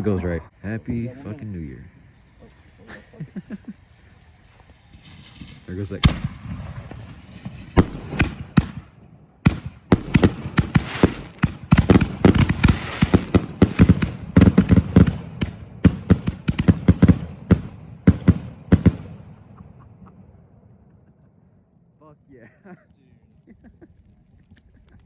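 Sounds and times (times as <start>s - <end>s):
fireworks launching and banging: 2.3s - 21.0s
rapid string of firework bangs: 3.5s - 20.6s.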